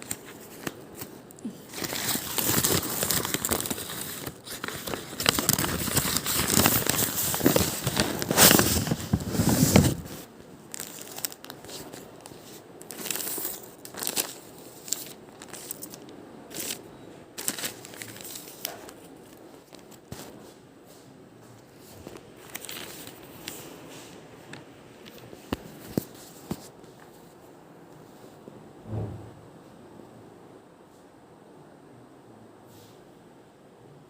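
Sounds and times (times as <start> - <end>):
packaging crinkling and tearing: 0.0 - 20.4, 21.8 - 23.8.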